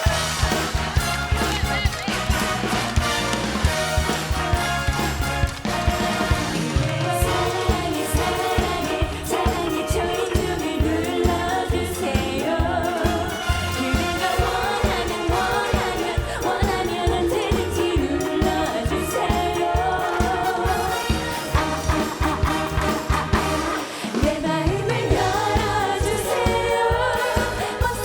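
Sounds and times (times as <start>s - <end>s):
pop song with dance beat: 0.0s - 28.0s
women singing: 5.9s - 28.0s.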